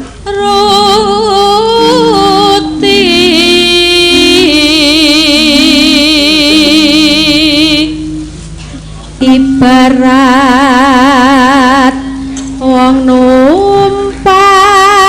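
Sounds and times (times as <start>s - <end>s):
person singing with vibrato: 0.0s - 15.0s
gamelan music: 1.8s - 4.9s.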